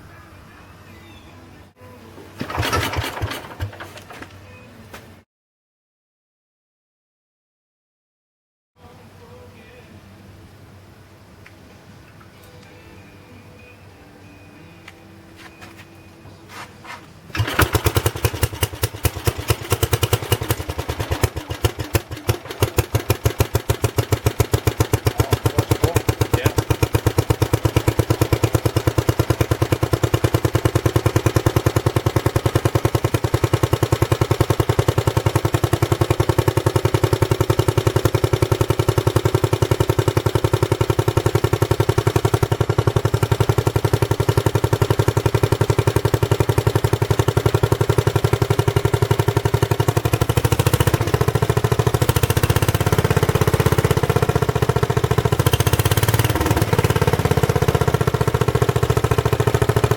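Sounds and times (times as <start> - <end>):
small engine running: 2.4 - 4.1, 17.3 - 59.9.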